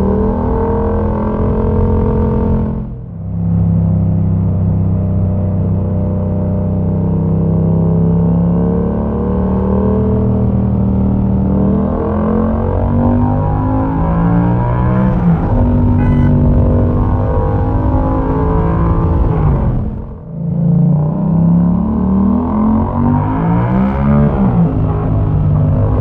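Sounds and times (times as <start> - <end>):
motorcycle engine accelerating: 0.0 - 26.0
motorcycle engine running: 15.6 - 17.9.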